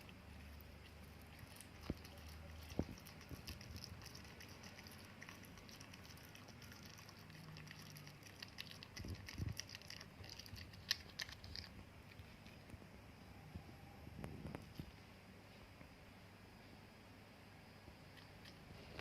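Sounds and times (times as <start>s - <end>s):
cat chewing and licking: 0.0s - 12.8s, 18.0s - 19.0s.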